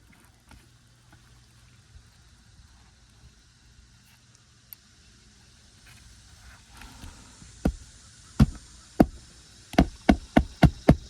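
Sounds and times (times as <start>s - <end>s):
hammer nailing roof shingle: 7.6s - 11.0s.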